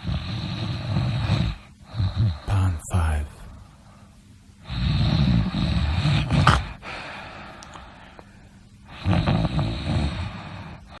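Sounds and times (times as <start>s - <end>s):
snort: 0.0s - 2.5s, 4.6s - 7.1s, 8.9s - 11.0s
person snoring: 0.0s - 3.2s, 4.6s - 7.1s, 8.9s - 11.0s.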